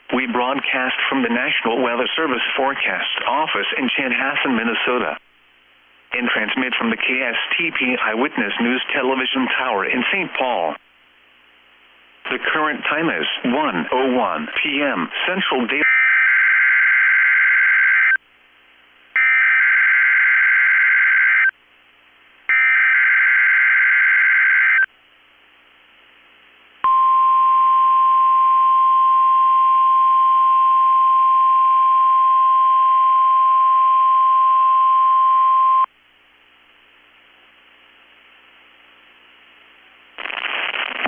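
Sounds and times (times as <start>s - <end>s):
steady warning alarm tone: 19.2s - 21.5s, 22.5s - 24.9s.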